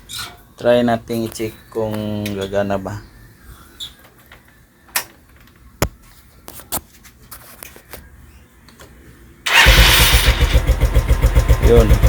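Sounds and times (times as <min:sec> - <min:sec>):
scooter engine starting and running: 0:09.5 - 0:12.0.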